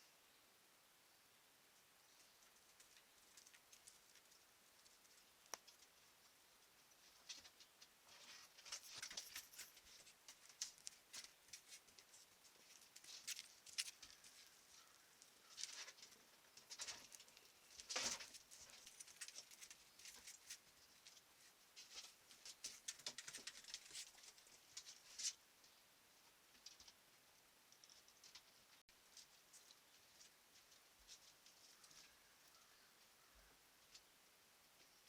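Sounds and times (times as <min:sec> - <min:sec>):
small animal footsteps and scratching: 0:02.1 - 0:33.2
animal scuffle: 0:07.0 - 0:25.4.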